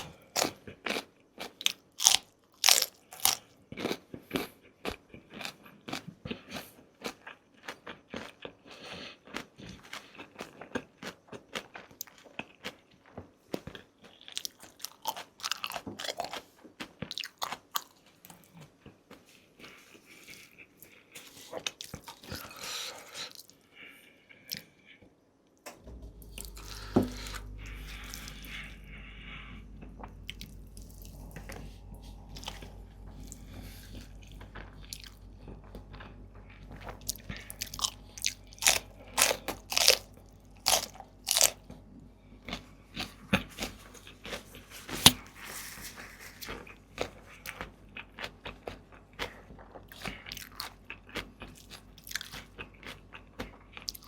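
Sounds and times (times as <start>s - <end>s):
crunchy bites and chewing: 0.0s - 23.6s, 26.1s - 54.0s
low steady hum: 25.6s - 54.0s.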